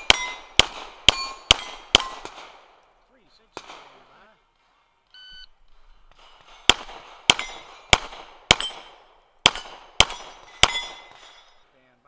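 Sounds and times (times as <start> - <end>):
steel targets ringing: 0.0 - 2.3, 6.1 - 11.7
pistol shots: 0.0 - 2.9, 3.5 - 4.6, 5.6 - 11.6.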